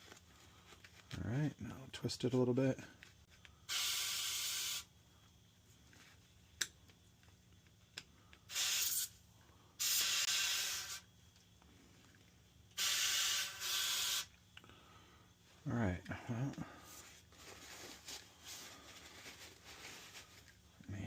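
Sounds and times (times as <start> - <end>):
spray bursts: 3.7 - 4.9, 8.5 - 9.2, 9.8 - 11.1, 12.7 - 14.3.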